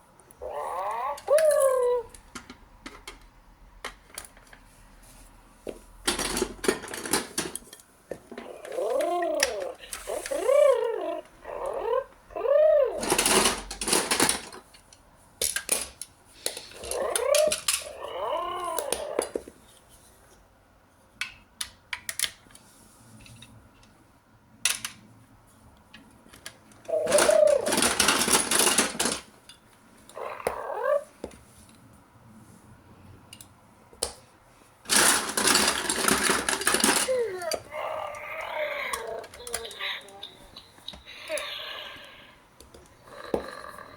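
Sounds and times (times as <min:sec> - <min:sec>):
rattling bursts: 0:34.9 - 0:37.6.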